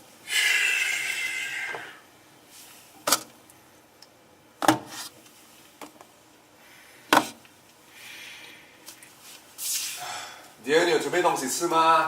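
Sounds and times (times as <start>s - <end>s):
soft rustle: 8.8s - 10.0s.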